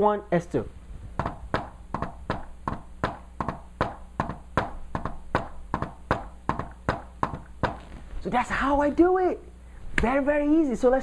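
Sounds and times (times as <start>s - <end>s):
hand taps in a rhythm: 1.2s - 8.0s.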